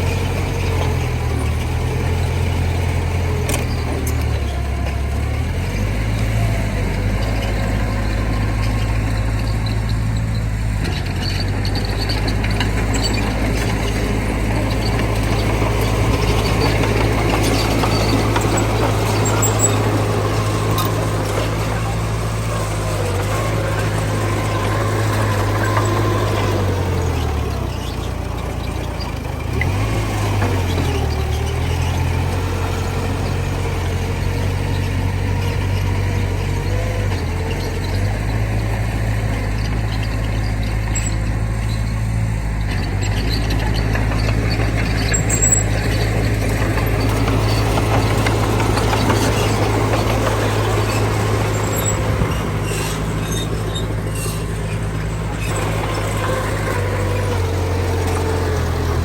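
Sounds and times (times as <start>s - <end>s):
diesel machinery engine drone: 0.0s - 59.0s
squeaks and clinks: 8.3s - 32.4s, 39.5s - 59.0s.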